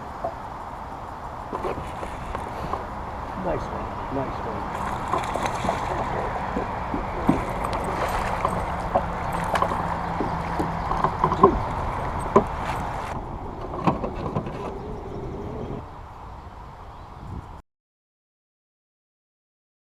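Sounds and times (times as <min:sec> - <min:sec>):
water splashing around kayak: 0:00.0 - 0:16.0
knocks against kayak hull: 0:04.8 - 0:13.1.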